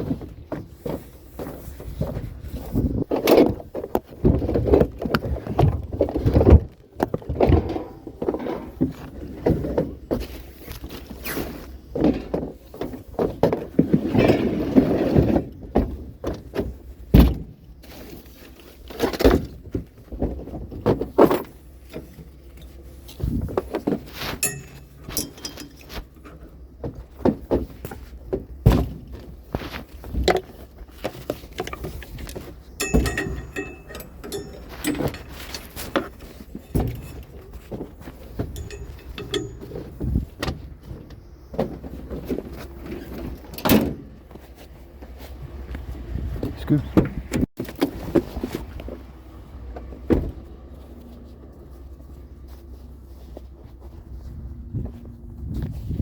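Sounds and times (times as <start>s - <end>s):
hard objects thudding and clattering: 0.0s - 11.0s, 23.2s - 44.4s
dense rattle: 1.9s - 10.3s, 23.2s - 27.8s, 30.0s - 44.2s.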